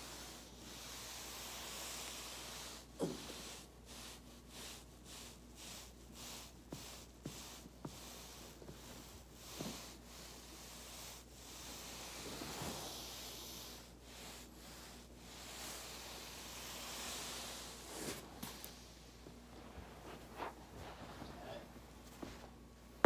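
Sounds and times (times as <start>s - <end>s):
body rubbing on foam roller: 0.0s - 23.0s.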